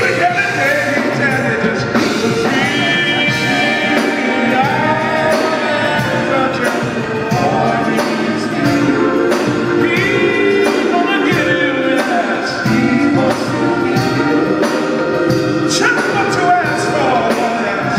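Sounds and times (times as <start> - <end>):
gospel singing with band: 0.0 - 17.9.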